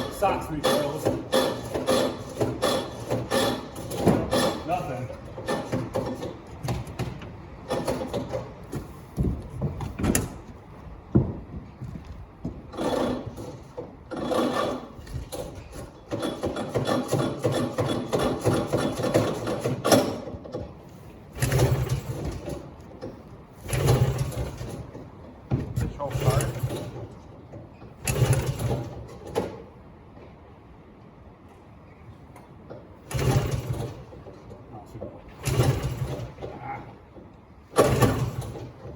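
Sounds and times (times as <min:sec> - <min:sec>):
recoil starter rope pulls: 0:00.0 - 0:10.5, 0:12.1 - 0:29.8, 0:33.0 - 0:38.9
engine turning over: 0:21.3 - 0:22.7, 0:23.6 - 0:25.0, 0:28.0 - 0:29.2, 0:33.0 - 0:34.2, 0:35.3 - 0:36.5, 0:37.7 - 0:38.9.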